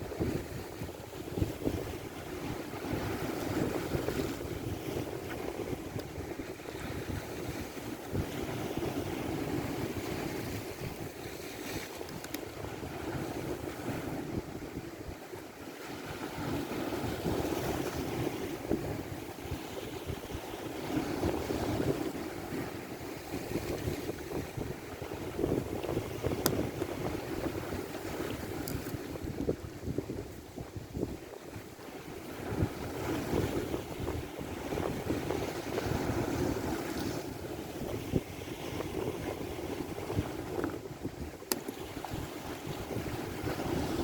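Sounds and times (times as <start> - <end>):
waves rushing: 0.0 - 44.0
wind buffeting microphone: 0.0 - 44.0.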